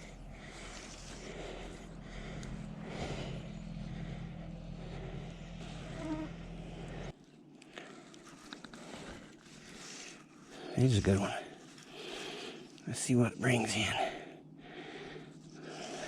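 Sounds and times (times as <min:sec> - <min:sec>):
steady low buzz: 0:00.0 - 0:07.2.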